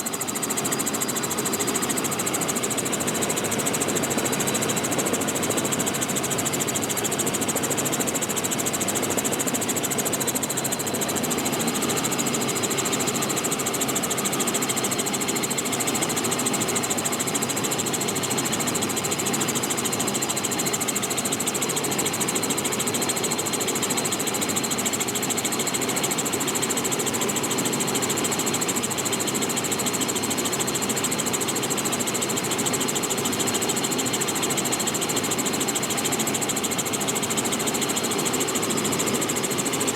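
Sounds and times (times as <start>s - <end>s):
helicopter rotor and engine: 0.0s - 39.9s.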